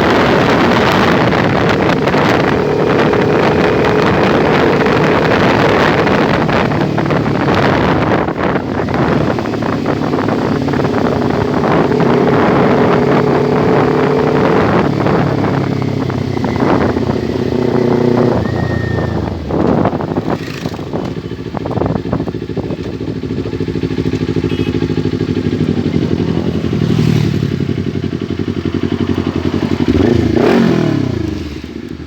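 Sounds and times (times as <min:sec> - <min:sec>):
motorcycle engine revving: 0:00.0 - 0:32.0.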